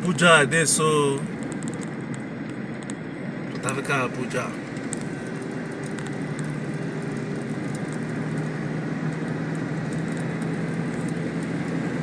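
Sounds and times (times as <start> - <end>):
car engine hum: 0.0 - 12.0
road noise: 0.0 - 12.0.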